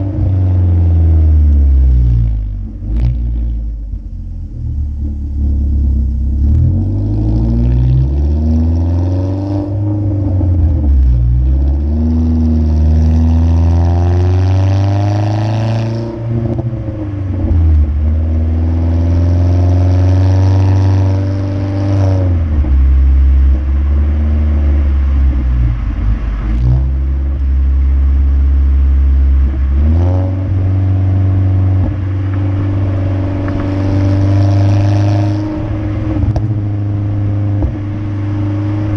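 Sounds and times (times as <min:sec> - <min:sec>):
exhaust crackles and pops: 0:00.0 - 0:08.2, 0:21.9 - 0:38.9
car engine revving: 0:00.0 - 0:38.9.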